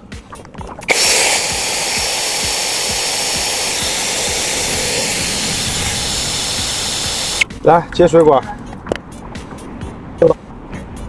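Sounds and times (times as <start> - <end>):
electric drill running pump: 0.9 - 7.4.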